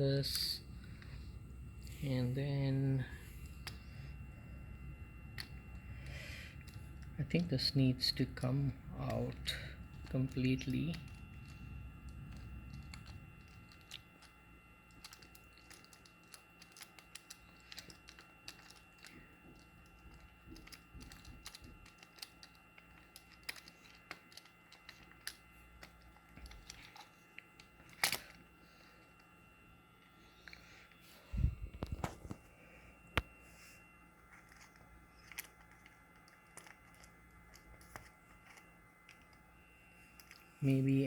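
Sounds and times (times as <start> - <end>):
faint high whine: 0.0 - 41.0
plastic parts clicking: 14.9 - 28.4.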